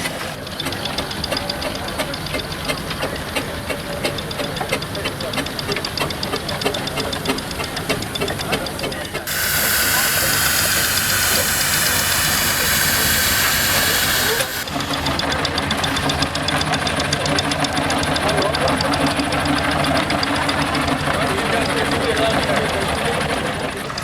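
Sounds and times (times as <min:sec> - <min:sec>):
fast mechanical ticking: 0:00.0 - 0:24.0
loud steam hiss: 0:09.2 - 0:16.3.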